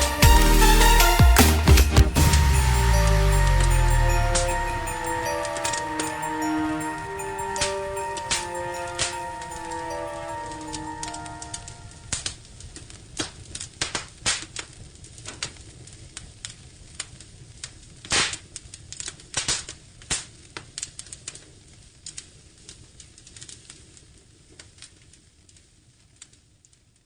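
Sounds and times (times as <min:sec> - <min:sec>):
firewood crackling and popping: 0:12.2 - 0:27.0.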